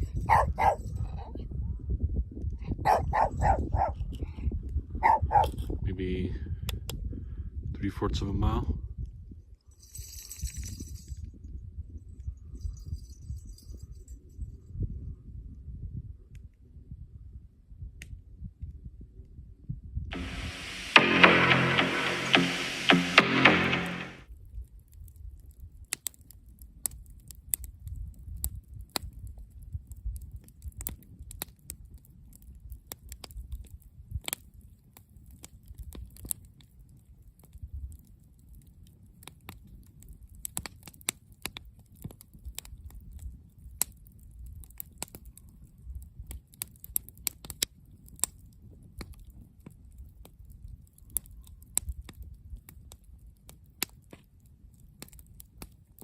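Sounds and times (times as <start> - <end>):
campfire crackling and popping: 2.9 - 4.3, 5.0 - 5.7, 20.1 - 56.0
low rumble: 20.1 - 24.2.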